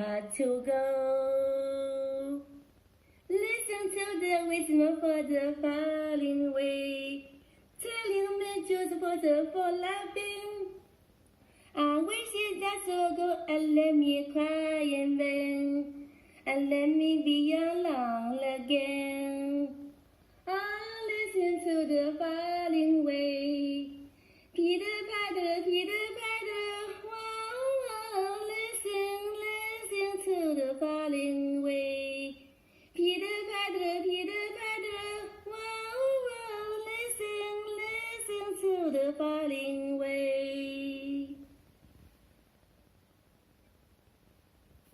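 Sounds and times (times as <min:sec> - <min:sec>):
girl singing unaccompanied: 0:00.0 - 0:11.0, 0:11.7 - 0:41.6.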